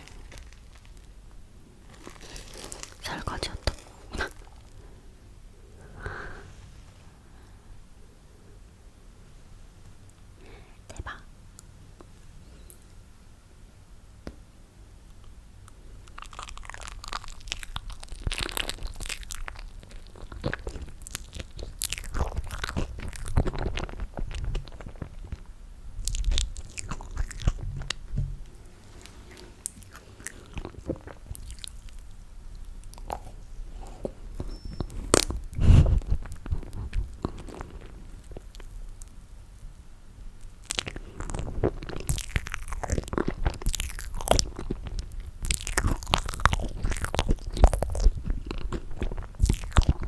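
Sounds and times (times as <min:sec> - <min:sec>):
sticky chewing and biting: 0:15.6 - 0:39.2, 0:40.4 - 0:50.0.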